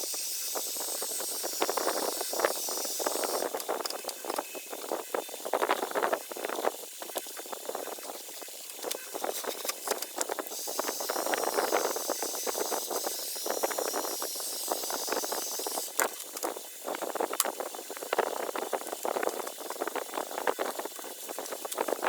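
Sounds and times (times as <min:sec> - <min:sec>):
crackling and scraping insulation: 0:02.4 - 0:10.9, 0:15.6 - 0:22.0.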